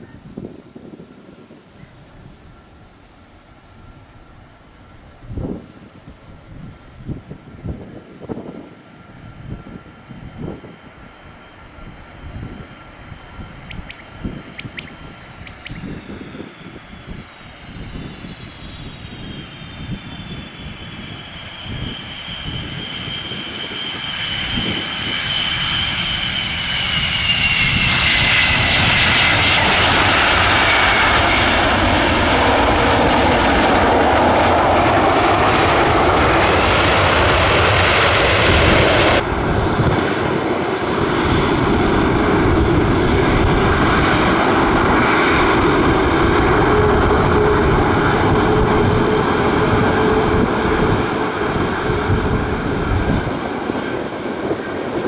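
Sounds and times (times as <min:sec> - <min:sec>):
jet engine fan whine: 0:00.0 - 0:55.0
jet engine roar: 0:00.0 - 0:55.0
low drone: 0:27.7 - 0:55.0.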